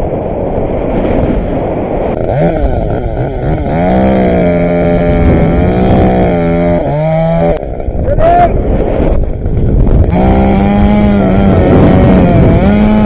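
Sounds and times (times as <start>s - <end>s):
wind buffeting microphone: 0.0s - 13.0s
chainsaw revving: 2.2s - 8.0s, 9.2s - 13.0s.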